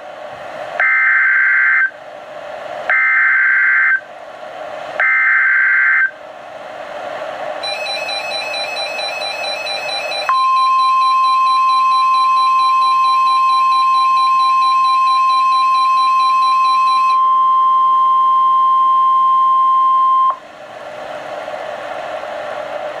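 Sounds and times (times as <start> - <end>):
steady single-pitch alarm tone: 0.8 - 1.9, 2.9 - 4.0, 5.0 - 6.1, 7.6 - 20.4.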